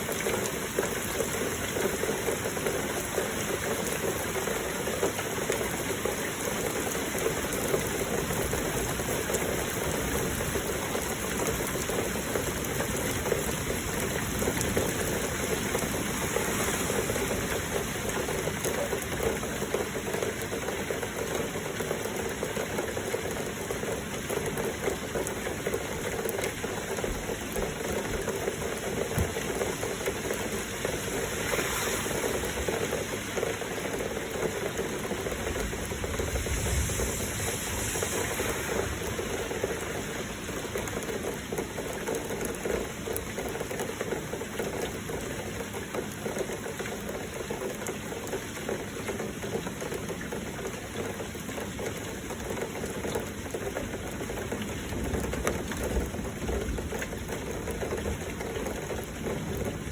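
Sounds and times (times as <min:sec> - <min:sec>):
flowing water rushing hiss: 0:00.0 - 0:43.6
heavy rain patter: 0:00.0 - 0:59.9.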